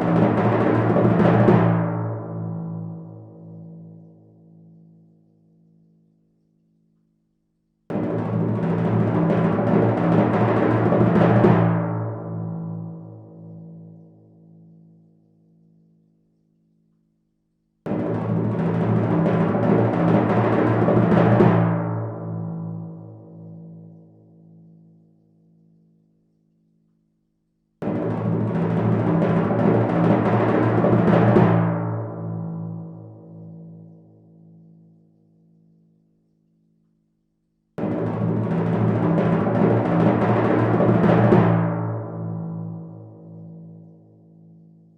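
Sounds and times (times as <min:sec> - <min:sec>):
timpani roll: 0:00.0 - 0:02.3, 0:07.9 - 0:12.3, 0:17.9 - 0:22.4, 0:27.8 - 0:32.5, 0:37.8 - 0:42.9.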